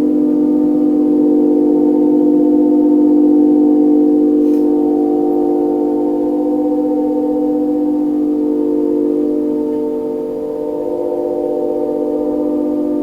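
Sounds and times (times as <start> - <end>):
held low tones humming: 0.0 - 13.0.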